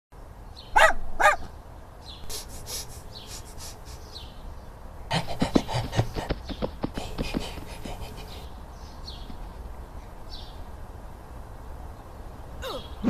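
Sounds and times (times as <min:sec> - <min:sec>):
animal yelps: 0:00.8 - 0:01.5, 0:12.6 - 0:13.0
breathy panting puffs: 0:02.3 - 0:04.2, 0:05.1 - 0:08.5.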